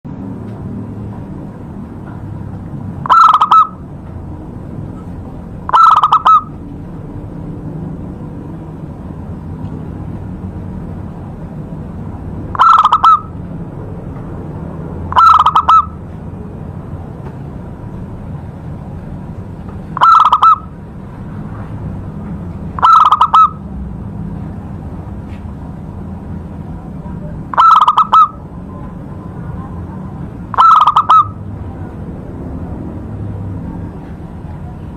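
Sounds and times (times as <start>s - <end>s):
dove cooing: 3.0s - 3.8s, 5.7s - 6.6s, 12.6s - 13.3s, 15.1s - 16.0s, 20.0s - 20.7s, 22.8s - 23.6s, 27.5s - 28.4s, 30.5s - 31.4s.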